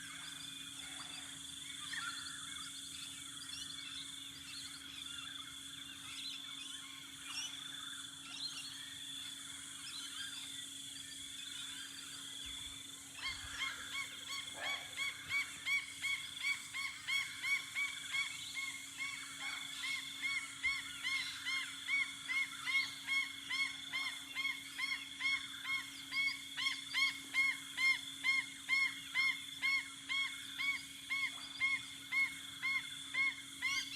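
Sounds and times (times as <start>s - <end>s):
birds chirping: 11.2s - 20.6s.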